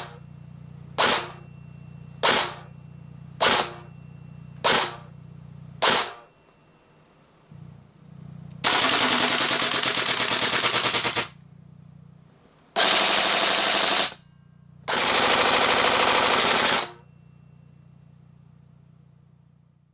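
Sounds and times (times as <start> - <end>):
airsoft rifle firing: 1.0 - 1.4, 2.2 - 2.6, 3.4 - 3.8, 4.6 - 5.1, 5.8 - 6.2, 8.6 - 11.4, 12.8 - 14.2.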